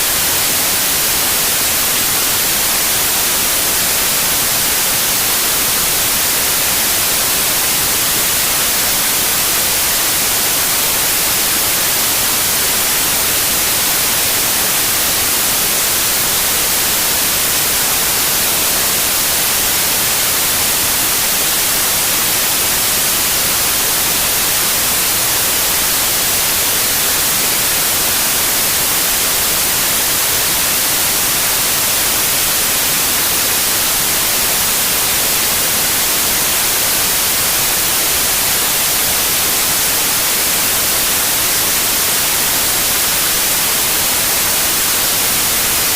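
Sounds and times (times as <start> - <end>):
white noise hiss: 0.0 - 45.9.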